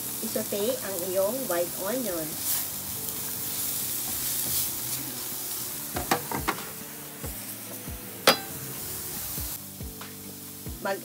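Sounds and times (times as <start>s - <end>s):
onion sizzling in hot oil: 0.0s - 11.0s
utensil knocking against pan: 6.0s - 6.7s, 8.3s - 8.6s.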